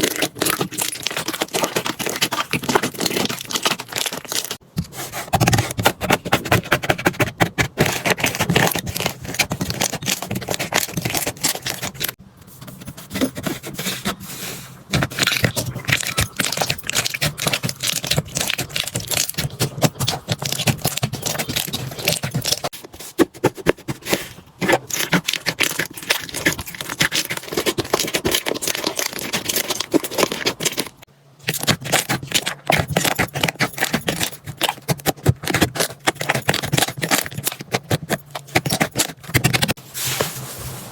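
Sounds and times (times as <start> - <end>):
hands squishing sticky slime: 14.9 - 39.8.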